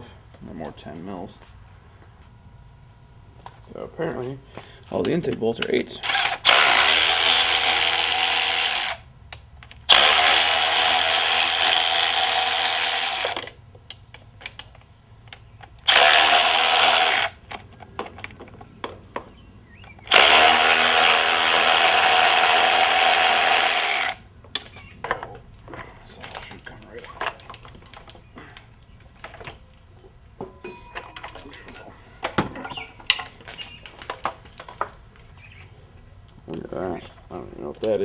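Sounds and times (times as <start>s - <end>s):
motorized socket tool whirring: 6.0s - 13.6s, 15.7s - 17.6s, 20.0s - 24.2s.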